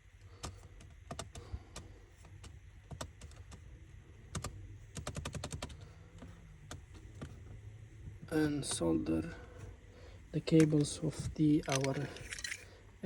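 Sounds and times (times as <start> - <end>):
computer keyboard typing: 0.4 - 3.6, 4.3 - 5.8.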